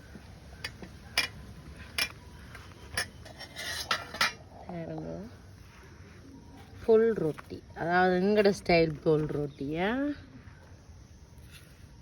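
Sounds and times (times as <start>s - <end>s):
metal scraping a plate: 2.9s - 4.4s.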